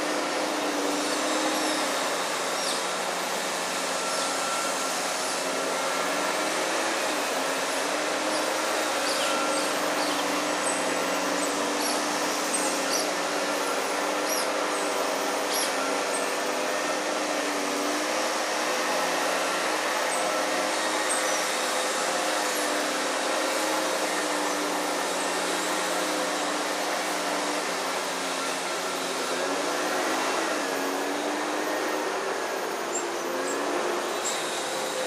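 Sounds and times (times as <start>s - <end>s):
loud machine drone: 0.0s - 35.0s.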